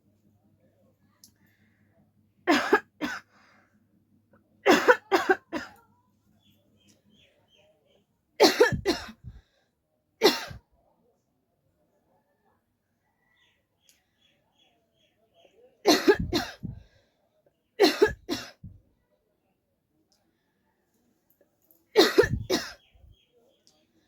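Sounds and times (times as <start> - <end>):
person coughing: 2.5 - 3.3, 4.7 - 5.8, 8.4 - 9.4, 10.2 - 10.6, 15.9 - 16.8, 17.8 - 18.8, 22.0 - 22.8.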